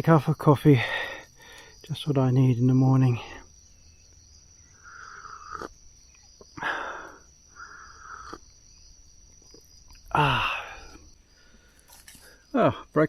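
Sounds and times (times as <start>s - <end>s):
insects droning: 0.0s - 13.0s
slurping sips of coffee: 5.0s - 5.8s, 7.9s - 8.5s
breathy exhale: 6.6s - 8.4s, 10.1s - 12.5s.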